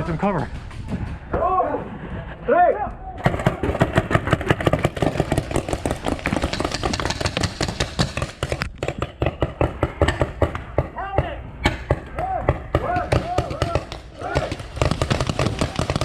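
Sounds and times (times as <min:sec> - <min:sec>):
paintball markers firing rapidly: 0:03.2 - 0:10.7, 0:11.7 - 0:16.0.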